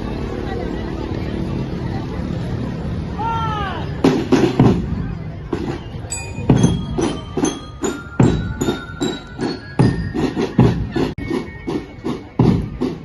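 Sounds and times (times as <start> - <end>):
bell-like melody: 6.0 - 13.0.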